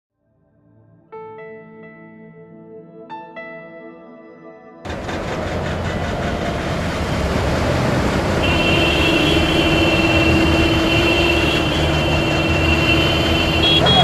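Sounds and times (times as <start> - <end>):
traffic on a wet street: 4.9 - 14.0
vehicle horn blast: 8.3 - 14.0.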